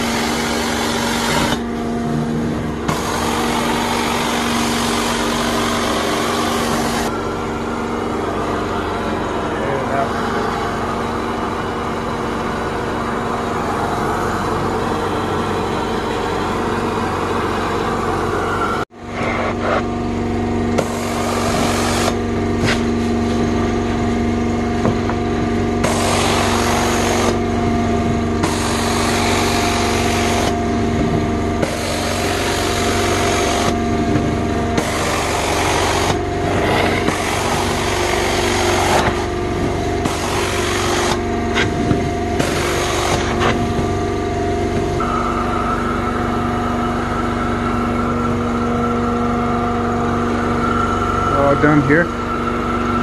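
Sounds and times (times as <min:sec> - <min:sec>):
cleaning wand rushing: 0:00.0 - 0:11.9, 0:20.7 - 0:23.2, 0:25.8 - 0:27.5, 0:28.4 - 0:30.6, 0:31.6 - 0:33.9, 0:34.6 - 0:41.8, 0:42.4 - 0:43.8
extraction machine motor hum: 0:00.0 - 0:53.0.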